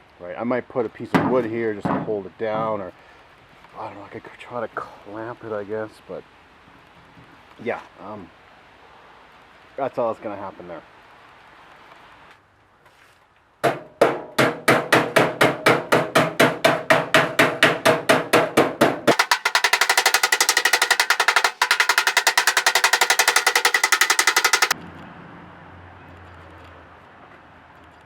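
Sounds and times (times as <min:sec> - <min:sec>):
hammer blows on sheet steel: 0:13.6 - 0:24.8.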